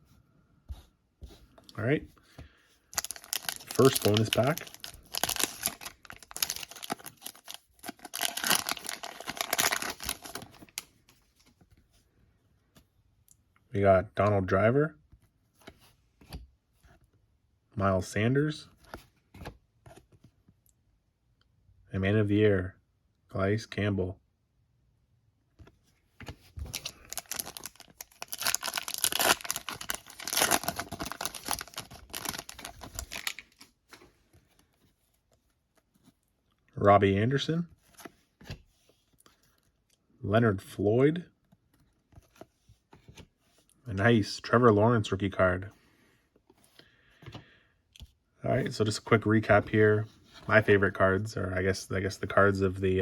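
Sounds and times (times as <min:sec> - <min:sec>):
plastic wrapper crinkling: 0:03.0 - 0:10.8, 0:26.7 - 0:33.8.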